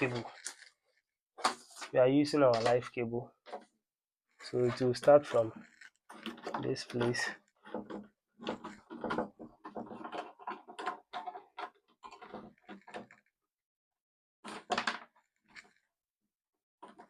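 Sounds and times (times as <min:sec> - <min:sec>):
cable scraping in plastic conduit: 0:04.4 - 0:13.2.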